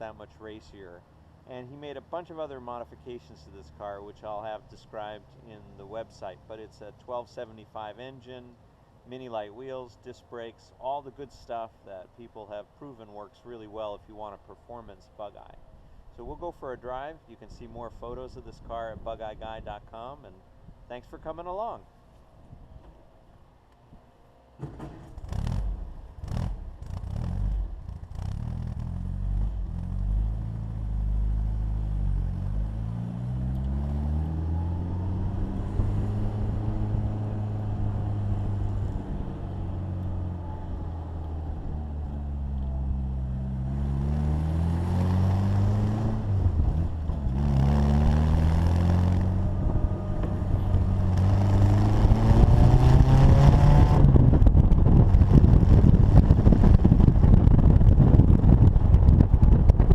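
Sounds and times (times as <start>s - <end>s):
car engine accelerating: 25.1s - 59.9s
rushing wind noise: 44.4s - 59.9s.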